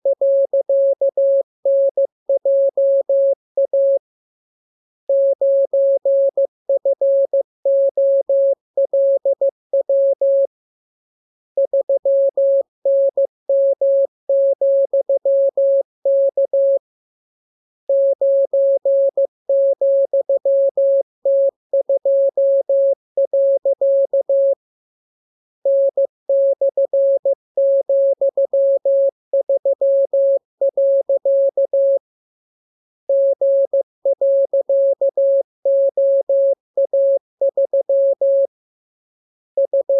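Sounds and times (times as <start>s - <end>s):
morse code tone: 39.6s - 39.9s.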